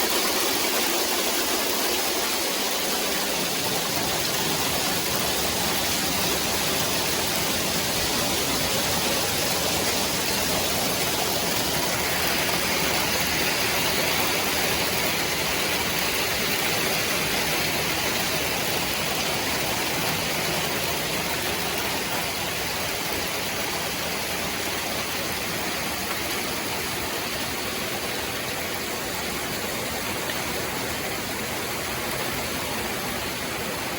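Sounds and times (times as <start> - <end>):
hail falling hard: 0.0 - 33.9.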